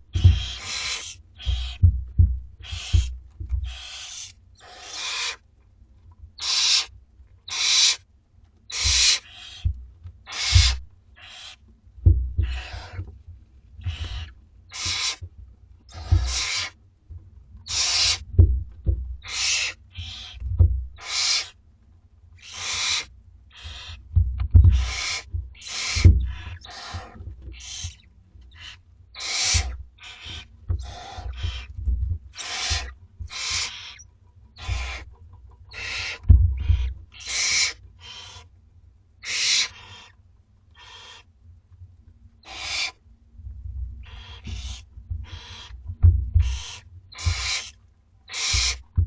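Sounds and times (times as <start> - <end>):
low thuds of movement: 0.0 - 0.6, 1.3 - 3.8, 10.5 - 10.9, 12.0 - 14.3, 18.2 - 19.2, 20.4 - 21.0, 24.1 - 26.6, 30.6 - 33.3, 36.2 - 37.1, 44.9 - 46.6
owl chicks screeching: 0.1 - 2.0, 2.6 - 5.4, 6.4 - 8.0, 8.7 - 11.6, 12.4 - 13.1, 13.8 - 15.2, 15.9 - 16.8, 17.6 - 18.3, 19.2 - 20.4, 21.0 - 21.6, 22.4 - 38.5, 39.2 - 40.2, 40.8 - 41.3, 42.4 - 43.0, 44.0 - 45.8, 46.4 - 48.8.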